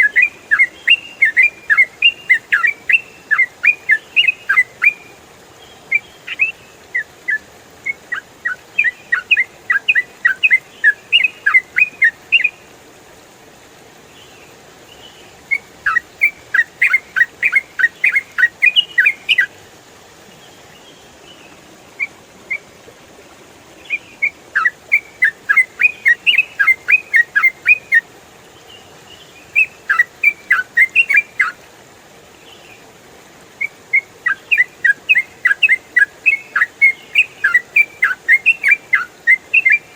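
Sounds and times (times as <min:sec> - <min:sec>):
bird chattering song: 0:00.0 - 0:05.1, 0:05.9 - 0:12.6, 0:15.5 - 0:19.5, 0:23.8 - 0:28.0, 0:29.5 - 0:31.6, 0:33.6 - 0:39.9
faint steady hiss: 0:00.0 - 0:39.9.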